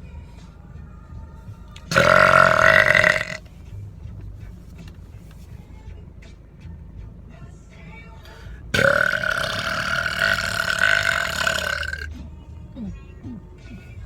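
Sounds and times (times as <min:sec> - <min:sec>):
loud long belch: 0:01.9 - 0:03.4, 0:08.8 - 0:12.1.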